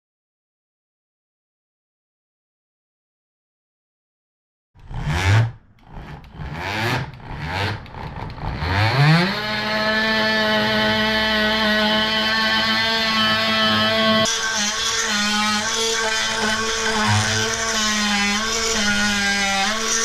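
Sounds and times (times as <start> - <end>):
boat engine revving: 4.8 - 20.0.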